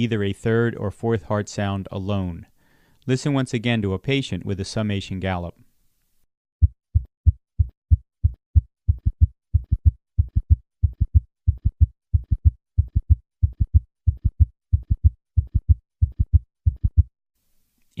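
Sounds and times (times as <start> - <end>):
heart beating fast: 6.6 - 17.1.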